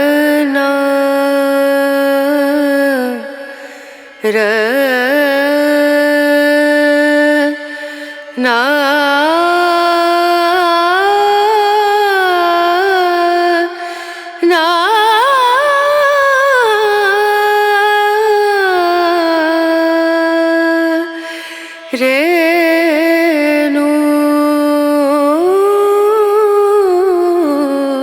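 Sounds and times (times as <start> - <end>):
person singing ornamented notes: 0.0 - 21.1.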